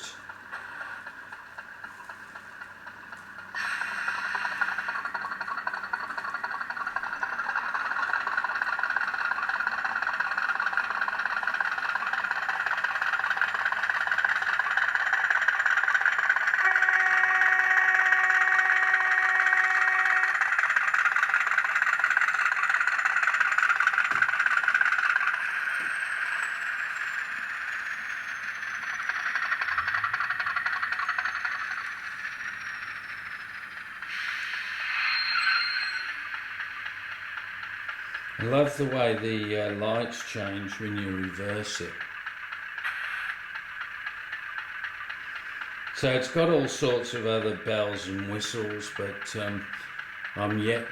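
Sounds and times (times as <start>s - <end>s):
model diesel engine running: 0.0s - 34.9s, 36.1s - 50.9s
train horn blast: 16.6s - 20.4s.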